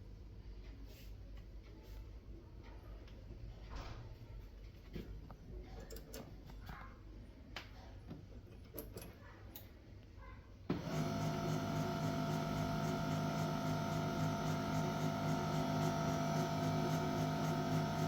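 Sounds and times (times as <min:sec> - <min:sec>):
printer motor humming: 0:10.7 - 0:18.0.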